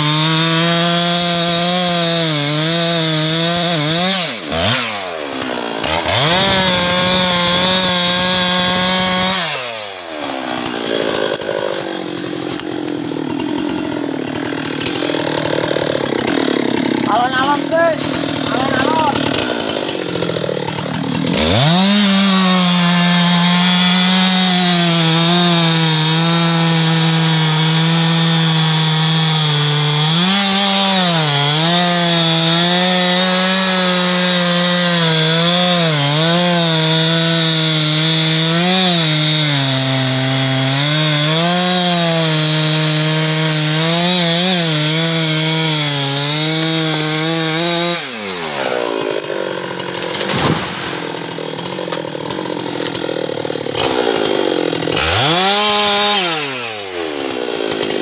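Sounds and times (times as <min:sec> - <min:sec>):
chainsaw cutting wood: 0:00.0 - 0:58.0.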